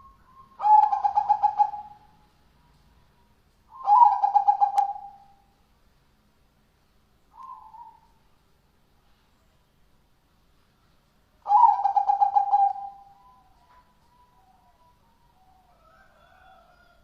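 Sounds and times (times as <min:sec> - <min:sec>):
dove cooing: 0:00.0 - 0:02.2, 0:03.7 - 0:05.4, 0:11.4 - 0:16.5.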